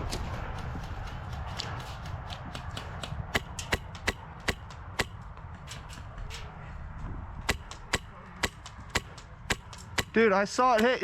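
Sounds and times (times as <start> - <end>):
airsoft gun shots: 3.3 - 5.3, 7.4 - 11.0.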